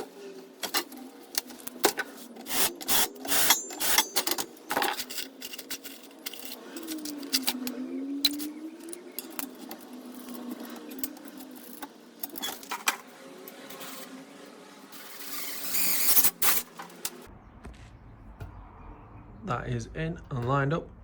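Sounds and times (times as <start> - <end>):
small metal parts clinking: 0.6 - 14.1.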